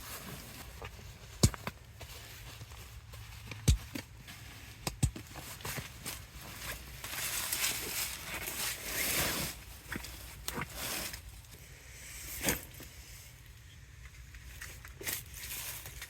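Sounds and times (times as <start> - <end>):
rustling noise: 0.0 - 11.6
sharp clicks and knocks: 3.5 - 4.1, 4.8 - 5.8.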